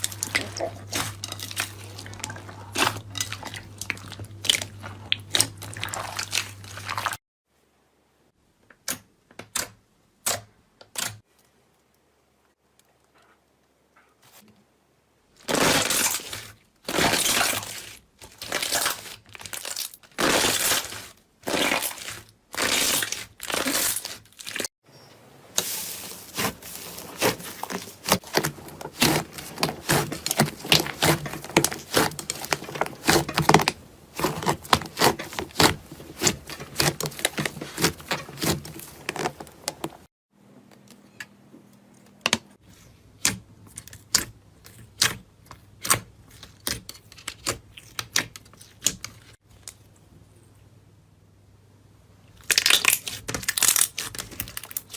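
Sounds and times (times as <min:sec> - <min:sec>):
crinkling and crackling: 0:00.0 - 0:07.2, 0:15.4 - 0:40.1, 0:52.4 - 0:54.9.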